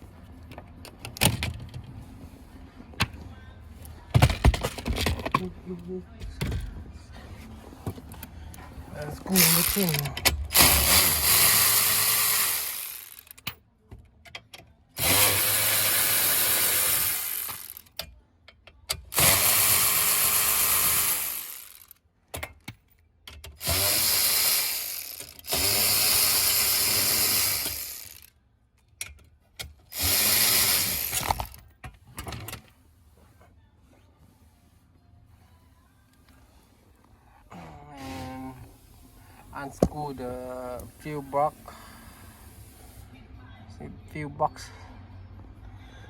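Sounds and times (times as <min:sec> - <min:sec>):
cordless drill running: 0:09.4 - 0:13.3, 0:15.0 - 0:17.8, 0:19.2 - 0:21.9, 0:23.6 - 0:28.3, 0:29.9 - 0:31.6.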